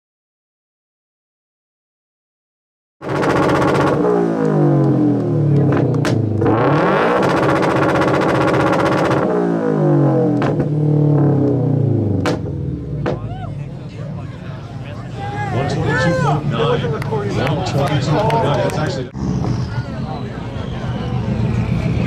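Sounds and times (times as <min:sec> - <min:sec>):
exhaust cracks: 0:03.0 - 0:13.8, 0:19.0 - 0:22.0
car engine revving: 0:03.0 - 0:22.0.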